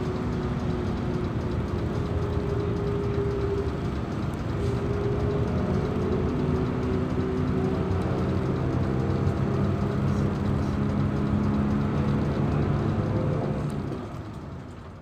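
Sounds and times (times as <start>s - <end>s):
bus diesel engine droning: 0.0s - 15.0s.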